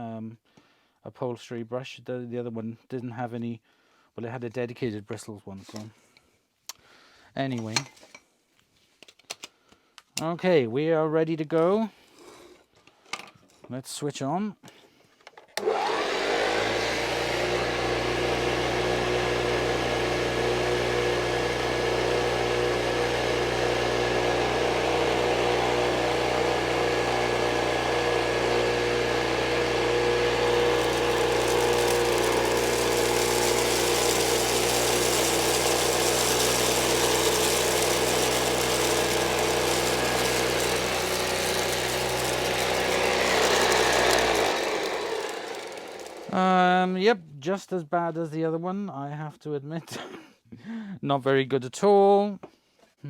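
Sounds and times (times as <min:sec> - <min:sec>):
vacuum cleaner running: 0:15.6 - 0:46.4.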